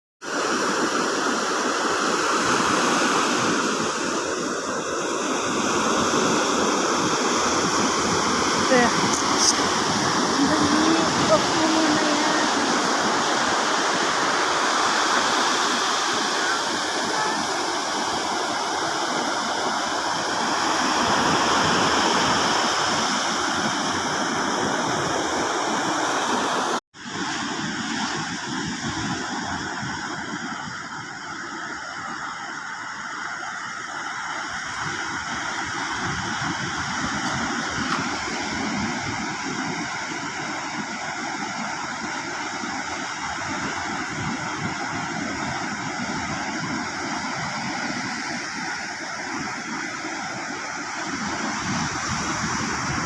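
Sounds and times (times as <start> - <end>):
rushing water roar: 0.2 - 53.0.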